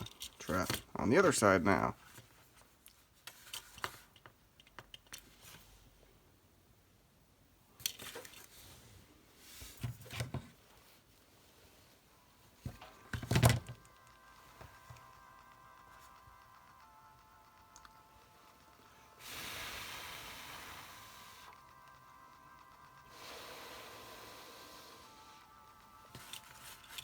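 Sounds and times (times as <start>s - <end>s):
music: 12.7s - 27.0s.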